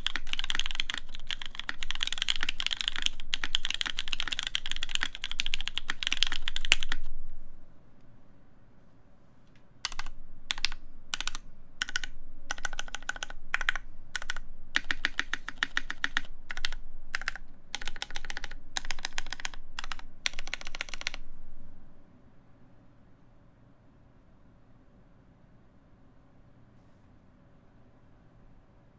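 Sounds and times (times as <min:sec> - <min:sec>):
typing on mechanical keyboard: 0:00.0 - 0:07.1, 0:09.8 - 0:21.2.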